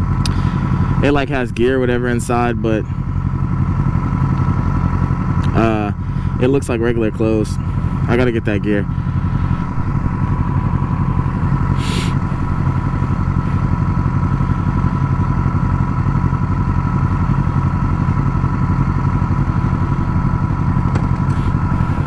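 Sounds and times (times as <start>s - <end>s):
motorcycle engine idling: 0.0s - 22.0s
short hiss: 11.8s - 12.2s.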